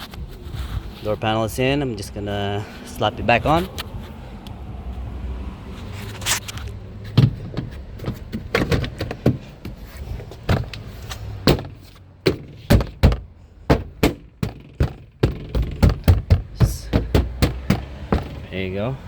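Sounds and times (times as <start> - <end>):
plastic panel clips thumping: 7.2 - 9.8, 10.4 - 18.5.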